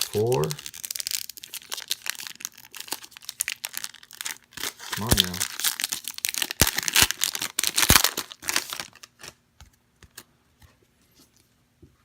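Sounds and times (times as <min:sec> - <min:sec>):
wrapper tearing and crinkling: 0:00.0 - 0:09.4.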